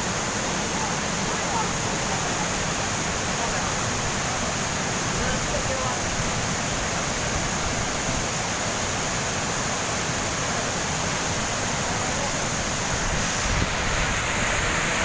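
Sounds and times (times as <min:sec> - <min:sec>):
waterfall pouring: 0:00.0 - 0:15.0.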